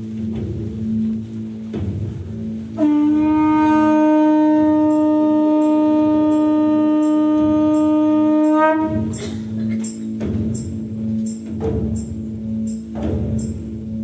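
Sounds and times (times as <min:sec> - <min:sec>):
low steady drone: 0:00.0 - 0:14.0
long note on horn: 0:02.8 - 0:09.2.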